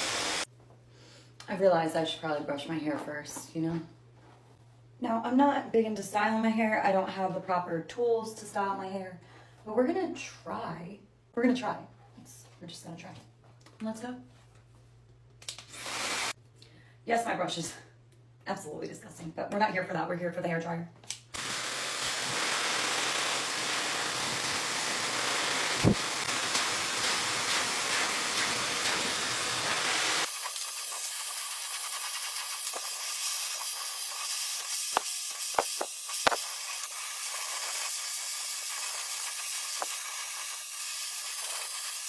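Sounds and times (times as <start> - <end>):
hair dryer blowing: 0.0 - 0.5, 15.7 - 16.4, 21.4 - 31.1.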